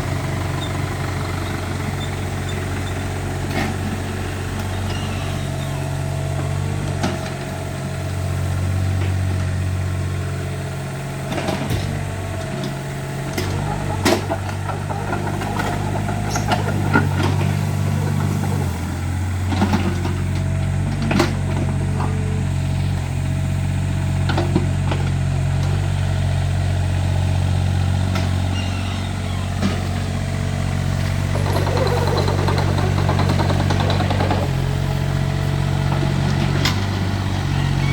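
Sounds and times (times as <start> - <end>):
excavator engine running: 0.0 - 37.9
machine rattling: 28.2 - 37.9.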